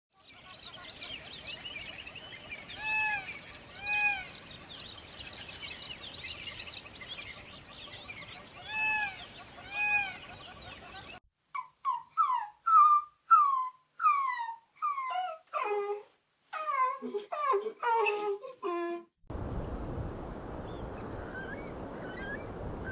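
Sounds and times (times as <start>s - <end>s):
birds chirping: 0.2s - 11.2s.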